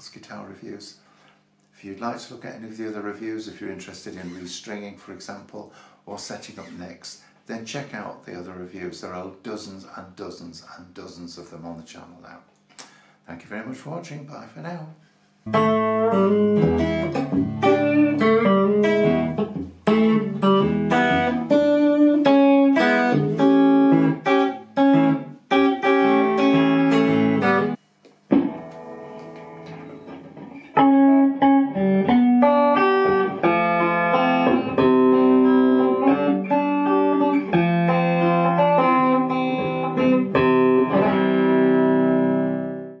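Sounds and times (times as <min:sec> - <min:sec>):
clean electric guitar: 0:15.5 - 0:43.0.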